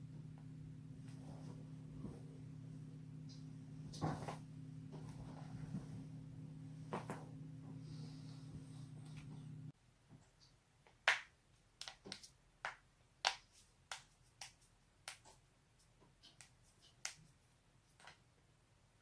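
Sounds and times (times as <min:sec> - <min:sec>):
low hum: 0:00.0 - 0:09.8.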